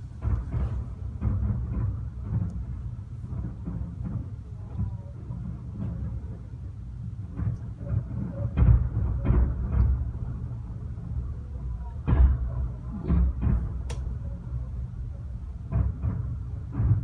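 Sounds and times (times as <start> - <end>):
sharp firework cracks: 13.6 - 14.2.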